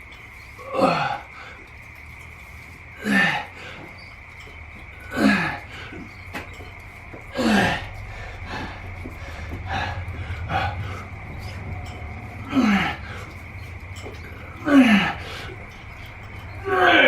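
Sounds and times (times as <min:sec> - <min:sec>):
low hum: 0:00.0 - 0:17.0
man breathing: 0:00.0 - 0:17.0
man grunting with effort: 0:16.6 - 0:17.0.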